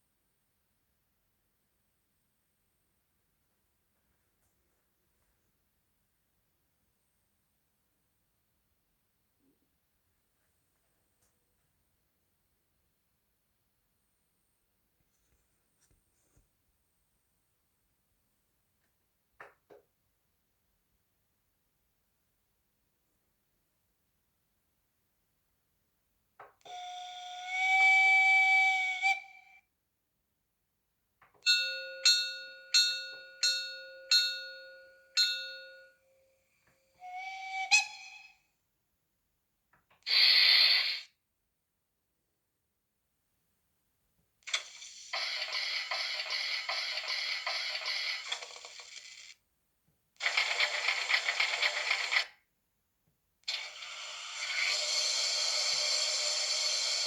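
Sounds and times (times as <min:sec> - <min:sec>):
model locomotive steady sound: 0:26.7 - 0:29.4, 0:44.5 - 0:49.4, 0:50.2 - 0:52.3, 0:53.5 - 0:57.0
steam whistle: 0:26.7 - 0:29.6, 0:36.9 - 0:38.4, 0:53.5 - 0:57.0
bell-like ringing tones: 0:31.5 - 0:36.3
model locomotive dense clattering: 0:45.2 - 0:49.0, 0:50.2 - 0:52.2.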